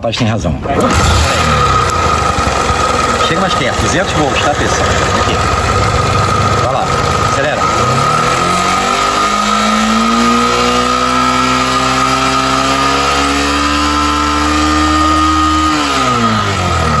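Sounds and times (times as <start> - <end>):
motorcycle engine revving: 0.6 - 17.0
steady high whine: 0.8 - 12.2.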